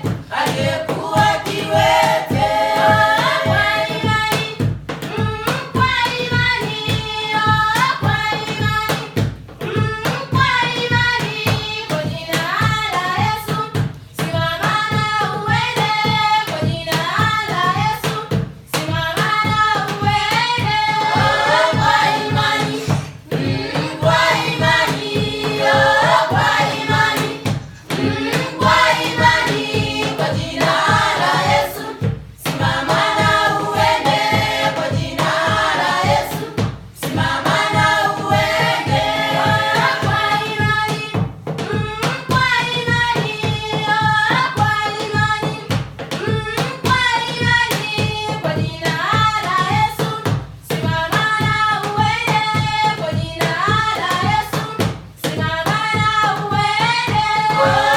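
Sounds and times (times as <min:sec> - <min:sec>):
choir singing: 0:00.3 - 0:04.0, 0:20.8 - 0:40.4, 0:57.3 - 0:57.9.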